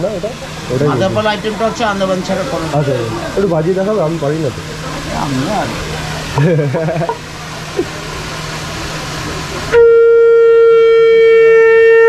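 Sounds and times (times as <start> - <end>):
steady background hiss: 0.0 - 12.0
conch shell horn note: 9.7 - 12.0.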